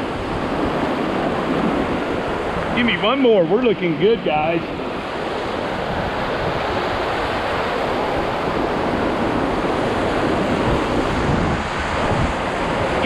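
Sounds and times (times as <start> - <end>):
whitewater rapids rushing: 0.0 - 13.0.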